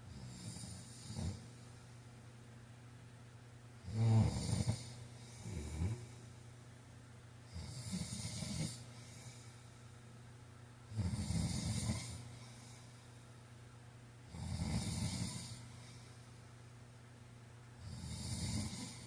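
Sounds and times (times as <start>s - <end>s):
man snoring: 0.1s - 1.4s, 3.8s - 6.1s, 7.5s - 8.9s, 10.9s - 12.3s, 14.3s - 15.7s, 17.8s - 19.0s.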